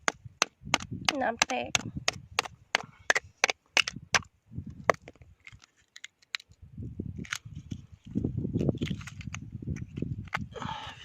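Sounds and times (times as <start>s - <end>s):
metal tool cracking oyster shell: 0.0s - 4.3s, 7.2s - 7.4s.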